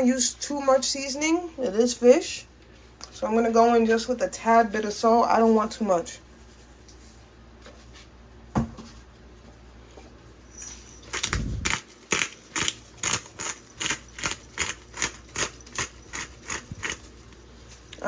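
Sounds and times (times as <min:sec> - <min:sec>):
spice grinder crunching: 0:10.6 - 0:18.0.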